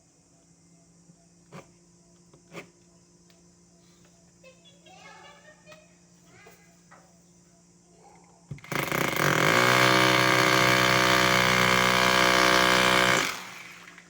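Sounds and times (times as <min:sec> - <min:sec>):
power tool motor spinning: 0:08.6 - 0:14.0.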